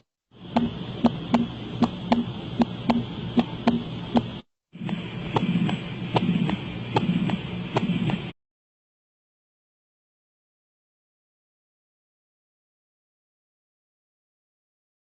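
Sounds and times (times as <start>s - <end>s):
heartbeat through stethoscope: 0.0s - 8.4s
heart murmur: 0.6s - 8.3s.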